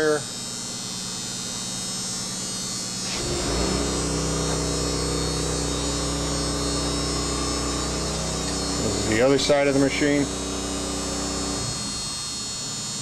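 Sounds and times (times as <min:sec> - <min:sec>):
electrical hum with high whine: 0:00.0 - 0:13.0
deep tonal hum: 0:02.9 - 0:13.0.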